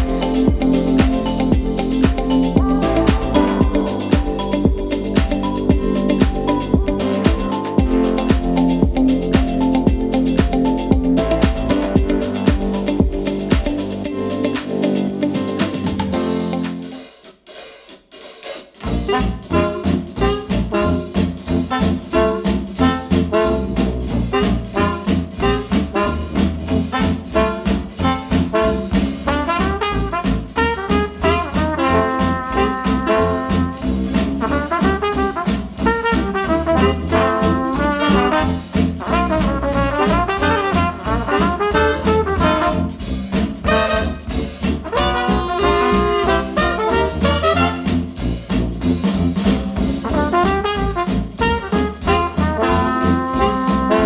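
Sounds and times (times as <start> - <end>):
jazz with brass horns: 0.0 - 17.1, 18.8 - 54.0.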